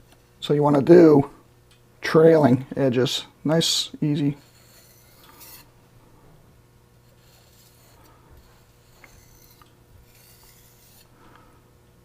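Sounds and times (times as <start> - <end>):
knife scraping on whetstone: 4.4 - 5.7, 7.0 - 11.1.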